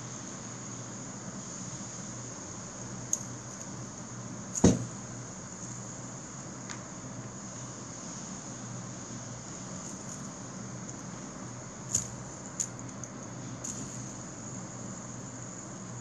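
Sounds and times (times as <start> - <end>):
high-pitched hiss: 0.0 - 16.0
knock: 4.6 - 4.9.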